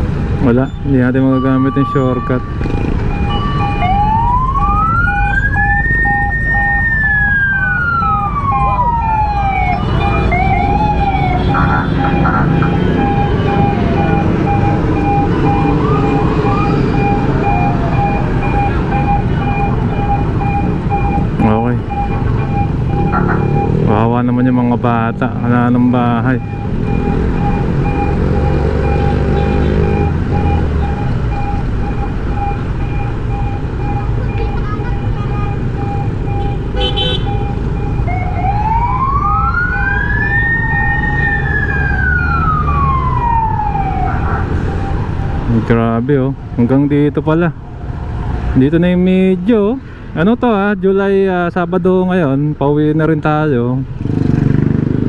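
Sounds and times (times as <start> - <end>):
siren wailing: 0.0 - 46.8
vehicle rumble in traffic: 0.0 - 55.0
electronic beeper beeping: 0.5 - 7.2, 9.7 - 38.4.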